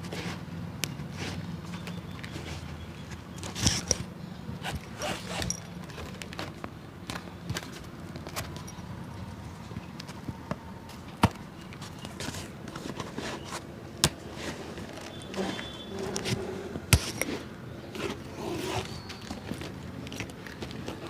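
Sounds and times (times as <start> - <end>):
scraping and rasping on shoe: 4.6 - 6.1, 11.8 - 19.7.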